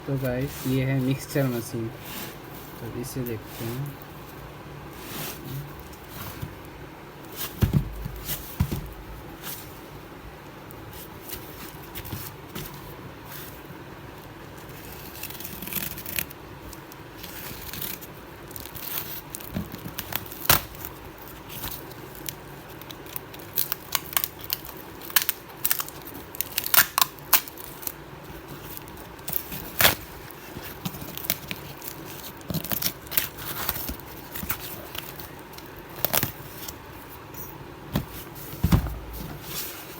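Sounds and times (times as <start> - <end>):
packaging tearing and crinkling: 14.7 - 36.8.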